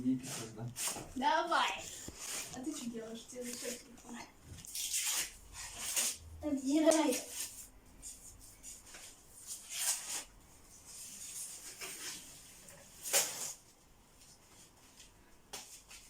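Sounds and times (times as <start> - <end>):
paper rustling: 0.4 - 6.2
wallpaper tearing: 4.6 - 7.7, 9.5 - 10.3, 13.0 - 13.6.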